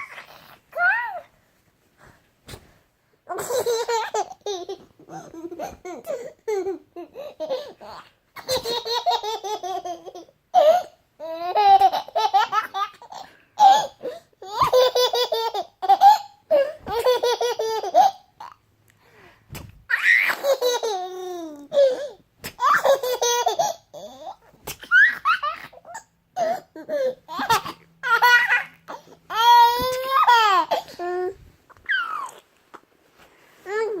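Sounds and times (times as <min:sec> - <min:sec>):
baby laughing: 0:03.3 - 0:18.6, 0:19.9 - 0:31.1, 0:31.8 - 0:32.4.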